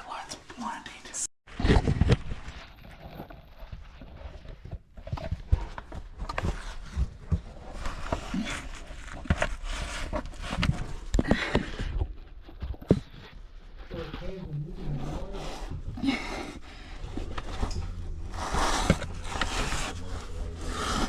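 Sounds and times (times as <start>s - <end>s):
footsteps and gear on rock: 2.0s - 15.1s.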